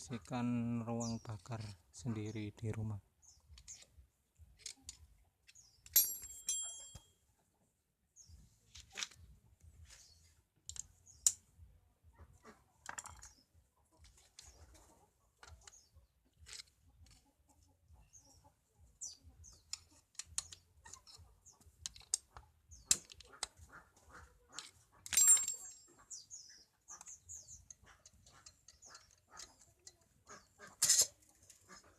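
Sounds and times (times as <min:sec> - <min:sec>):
metal tools clicking and clinking: 0:04.6 - 0:07.1, 0:24.5 - 0:26.2, 0:30.7 - 0:31.2.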